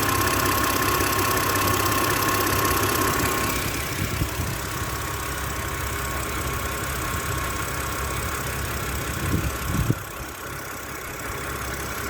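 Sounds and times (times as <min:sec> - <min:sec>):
car engine idling with ticking: 0:00.0 - 0:12.0.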